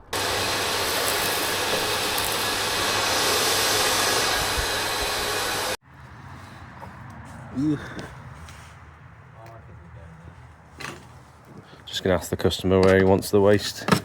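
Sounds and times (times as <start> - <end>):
vacuum motor rushing air: 0.0 - 5.8.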